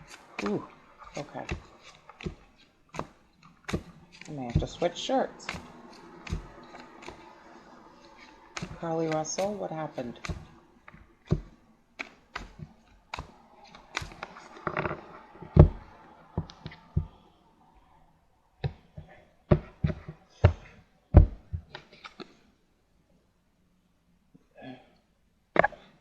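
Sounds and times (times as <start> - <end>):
cards shuffled on a table: 0.0 - 17.1, 21.6 - 22.4.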